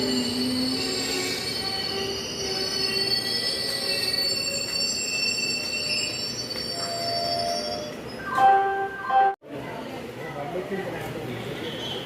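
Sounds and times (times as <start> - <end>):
low train rumble: 0.0 - 8.2
train wheels squealing on rails: 0.0 - 8.4.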